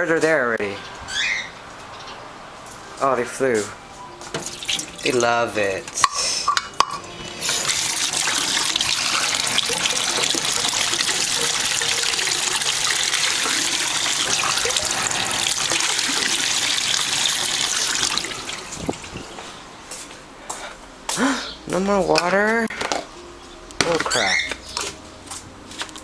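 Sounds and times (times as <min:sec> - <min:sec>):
water running from a tap: 0:04.4 - 0:05.0, 0:07.2 - 0:19.4.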